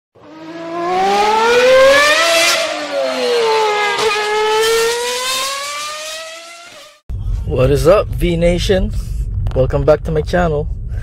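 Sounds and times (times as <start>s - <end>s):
car engine revving hard: 0.2s - 7.0s.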